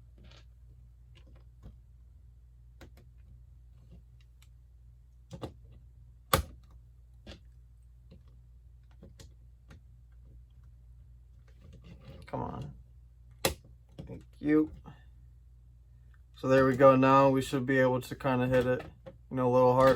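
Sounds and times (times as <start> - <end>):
sharp plastic snap: 13.4 - 13.7.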